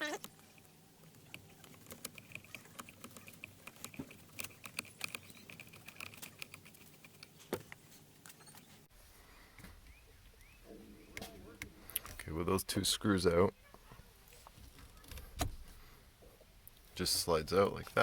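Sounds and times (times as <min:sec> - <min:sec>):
screwdriver clicks and scratches: 0:01.2 - 0:07.4.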